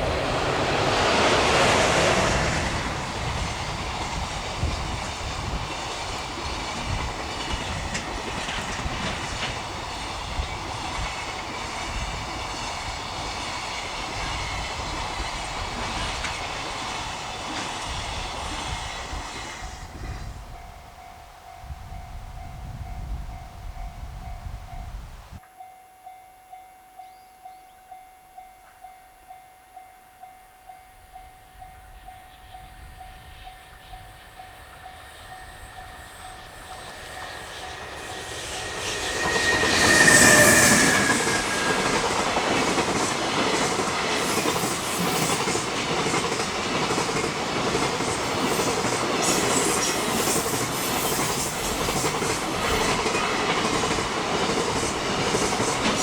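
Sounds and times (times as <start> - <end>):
wagons clattering over rail joints: 3.1 - 11.8.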